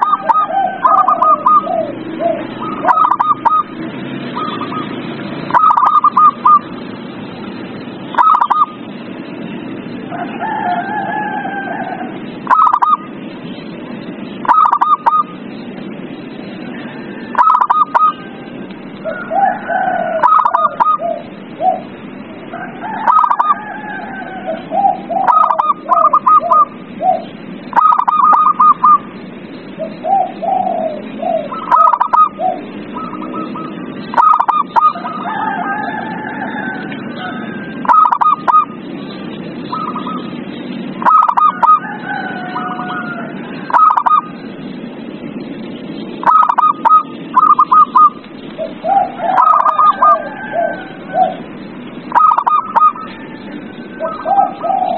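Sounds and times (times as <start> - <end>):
doves cooing: 0.0 - 6.8, 8.1 - 8.9, 10.0 - 13.2, 14.3 - 15.4, 16.5 - 44.8, 46.0 - 54.9.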